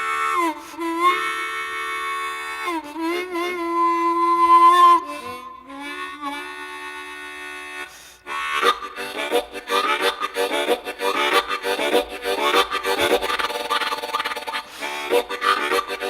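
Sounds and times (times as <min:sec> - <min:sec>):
harmonica train imitation: 0:00.0 - 0:16.0.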